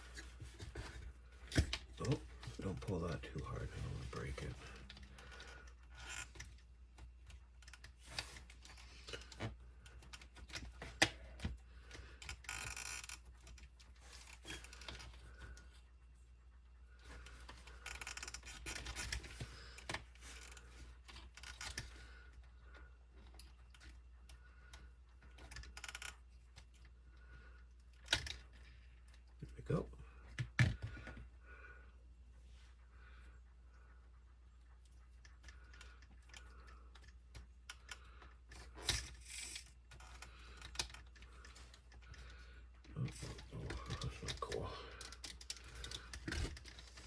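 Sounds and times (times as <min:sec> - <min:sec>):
plastic and metal parts clicking: 0:35.2 - 0:47.0.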